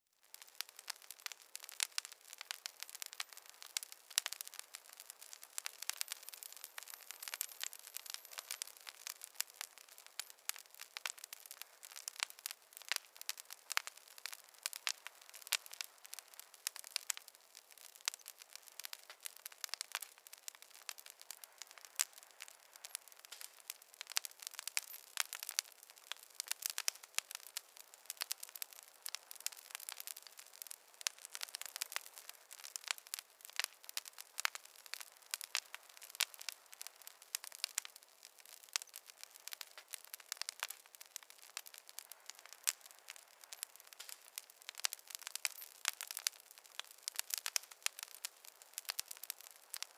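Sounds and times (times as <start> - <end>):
fire crackling: 0.2 - 49.9.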